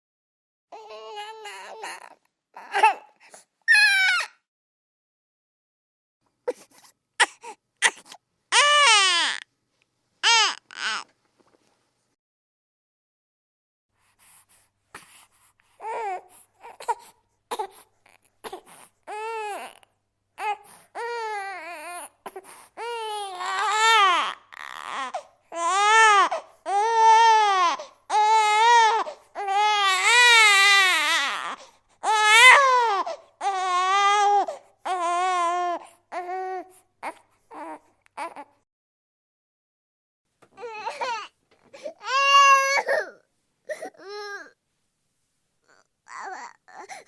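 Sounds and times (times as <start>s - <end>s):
infant crying: 0.7s - 4.5s, 6.5s - 9.5s, 10.2s - 11.1s, 15.8s - 38.6s, 40.6s - 44.6s, 45.7s - 47.0s.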